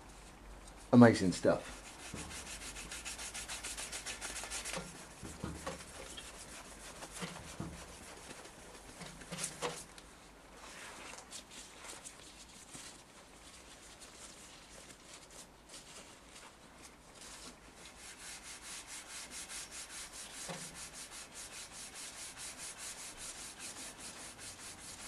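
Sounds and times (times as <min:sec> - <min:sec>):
hand rubbing with hissing scrape: 0:01.6 - 0:09.9, 0:17.2 - 0:25.0.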